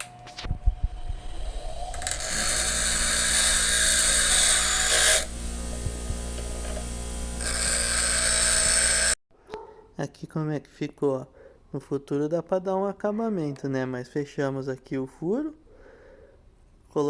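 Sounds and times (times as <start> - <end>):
grinder motor humming: 0.1 - 9.2
high grinding hiss on metal: 1.0 - 9.2.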